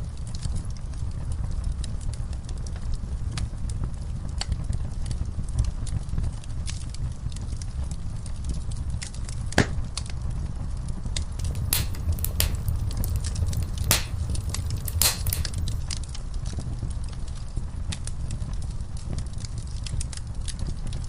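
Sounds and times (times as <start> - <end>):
fire flames rumbling: 11.4 - 15.9
fire crackling and popping: 11.4 - 16.0.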